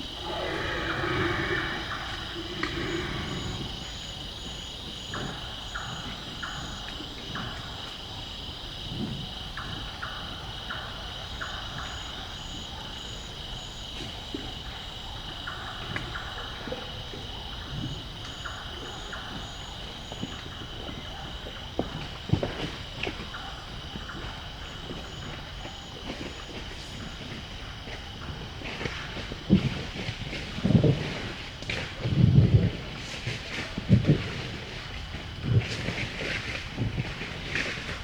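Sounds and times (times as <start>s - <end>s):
pulsing insect trill: 0.0s - 21.8s
frogs calling: 0.0s - 29.3s
high insect drone: 0.0s - 30.2s.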